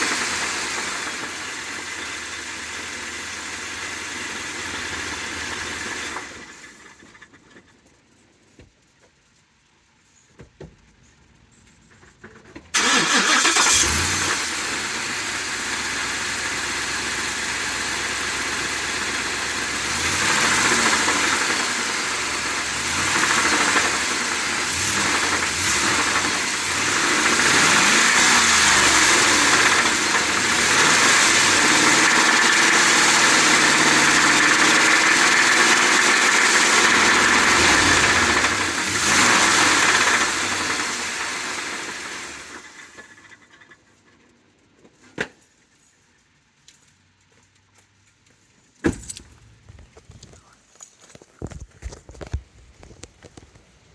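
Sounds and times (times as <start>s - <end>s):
engine starting and revving: 0.0s - 2.7s, 12.8s - 43.4s.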